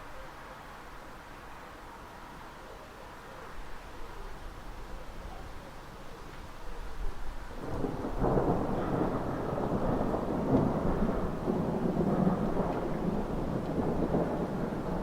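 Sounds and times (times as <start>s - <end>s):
thunder rumbling: 7.6s - 15.0s.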